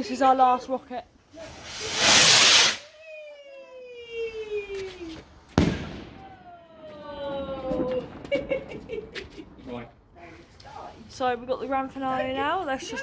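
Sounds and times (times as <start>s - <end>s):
firework rocket hissing: 1.4s - 3.0s
firework bang: 1.5s - 2.9s, 5.5s - 9.2s
falling firework whistle: 1.6s - 8.3s.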